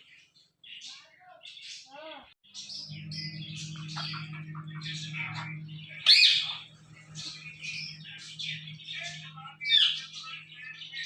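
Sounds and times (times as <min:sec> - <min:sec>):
parakeet squawking and chattering: 0:02.6 - 0:11.0.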